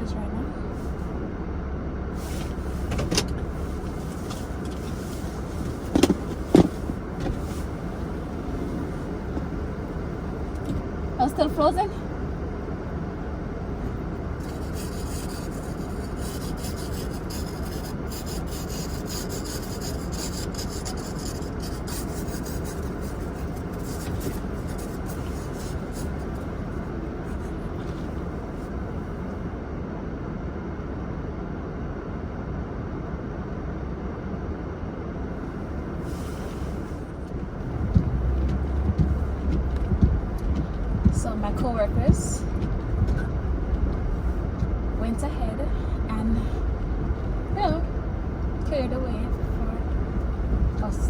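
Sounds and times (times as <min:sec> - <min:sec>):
car idling: 0:00.0 - 0:31.0, 0:35.3 - 0:51.0
scratchy rubbing noises: 0:02.2 - 0:11.8, 0:14.4 - 0:28.8, 0:35.8 - 0:51.0.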